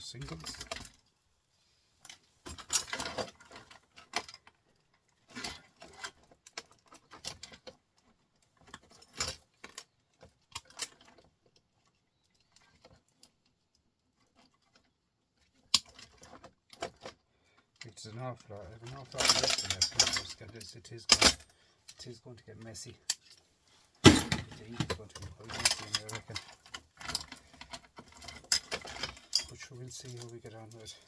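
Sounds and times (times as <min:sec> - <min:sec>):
scrap parts clinking into bucket: 0:17.9 - 0:23.4, 0:24.0 - 0:31.0.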